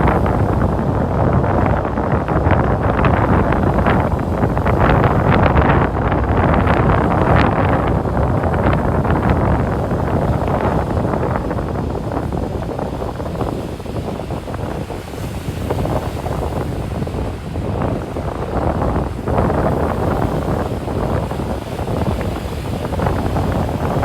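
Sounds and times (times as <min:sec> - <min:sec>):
surf washing onto beach: 0:00.0 - 0:24.0
wind buffeting microphone: 0:00.0 - 0:24.0.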